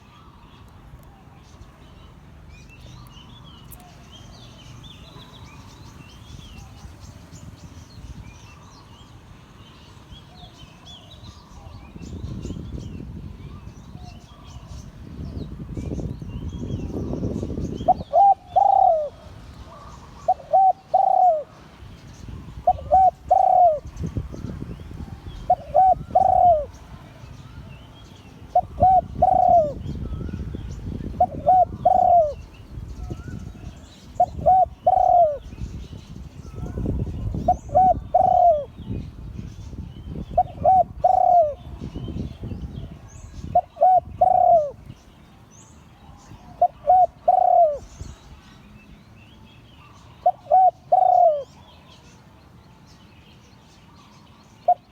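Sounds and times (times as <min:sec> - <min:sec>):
dove cooing: 0:16.6 - 0:21.6, 0:22.4 - 0:27.3, 0:28.4 - 0:35.8, 0:36.5 - 0:38.8, 0:40.2 - 0:42.1, 0:42.8 - 0:44.9, 0:46.3 - 0:48.2, 0:49.8 - 0:51.6.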